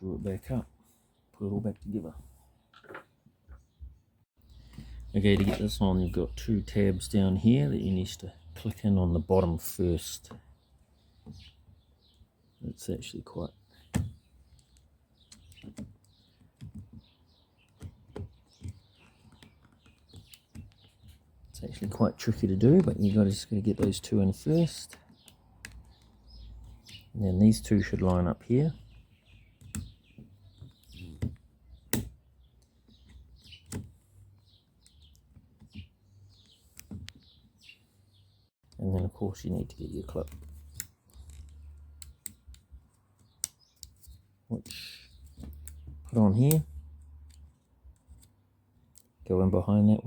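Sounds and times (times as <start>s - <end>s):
birds chirping: 0.0s - 50.0s
plastic clicks and knocks: 13.9s - 22.0s, 29.6s - 32.2s, 36.8s - 37.3s.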